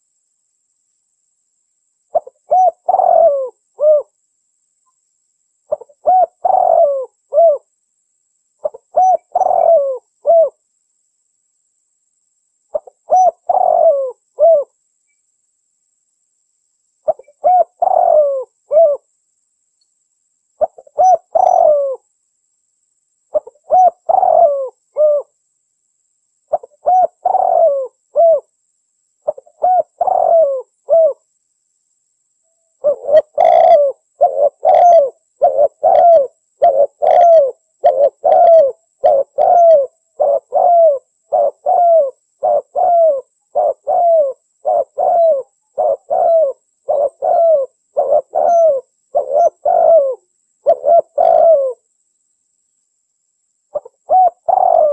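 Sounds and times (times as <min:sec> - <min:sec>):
doves cooing: 0:02.1 - 0:04.1, 0:05.7 - 0:07.6, 0:08.6 - 0:10.6, 0:12.7 - 0:14.7, 0:17.1 - 0:19.0, 0:20.6 - 0:22.0, 0:23.3 - 0:25.3, 0:26.5 - 0:28.5, 0:29.3 - 0:31.2, 0:32.8 - 0:51.8, 0:53.7 - 0:54.9.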